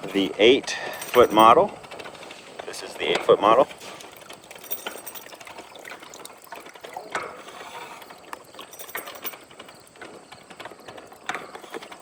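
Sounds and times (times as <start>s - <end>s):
oil pouring and trickling: 0.9s - 12.0s.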